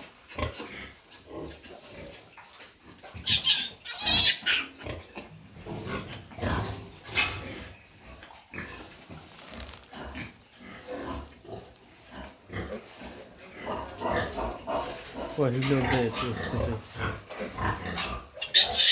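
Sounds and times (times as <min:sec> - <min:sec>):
pigs low calls: 0:02.9 - 0:18.9
piglets squealing: 0:03.2 - 0:04.9, 0:18.4 - 0:18.9.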